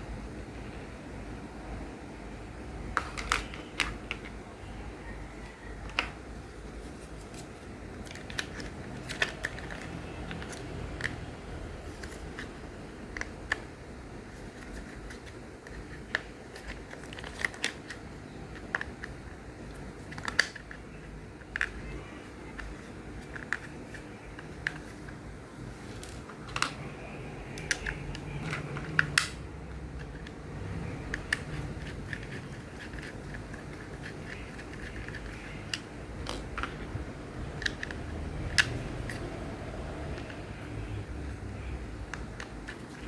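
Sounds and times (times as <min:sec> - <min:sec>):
plastic toy pieces clicking: 0:08.0 - 0:11.2, 0:14.5 - 0:25.2, 0:27.6 - 0:29.4, 0:31.0 - 0:39.3.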